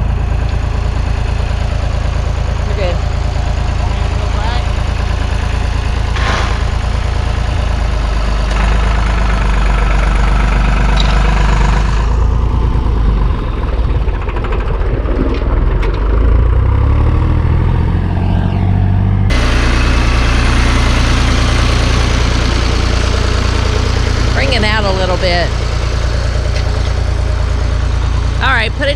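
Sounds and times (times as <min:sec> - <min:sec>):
vehicle engine running: 0:00.0 - 0:28.9.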